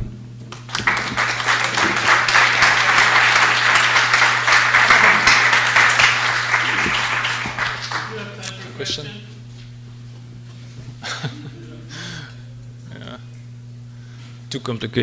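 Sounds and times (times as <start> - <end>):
audience applauding: 0.5 - 8.8.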